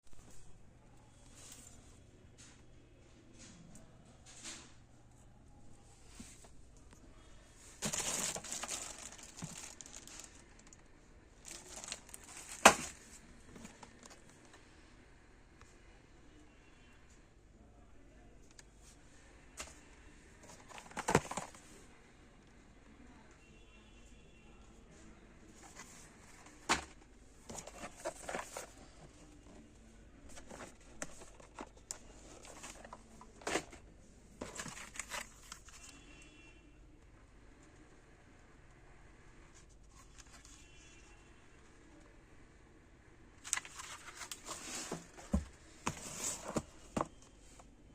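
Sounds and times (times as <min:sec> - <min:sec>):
packaging crinkling: 0:07.8 - 0:10.8, 0:11.4 - 0:13.0.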